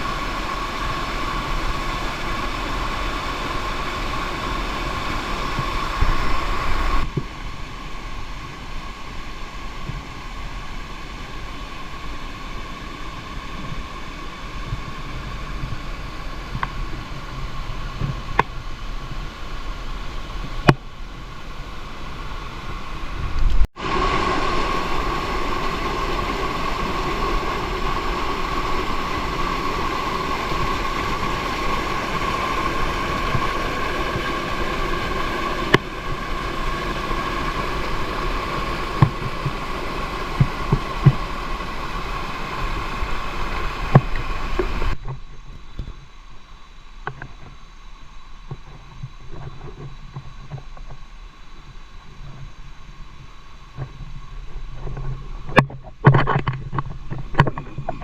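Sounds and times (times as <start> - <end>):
waterfall rushing: 0.0 - 45.0.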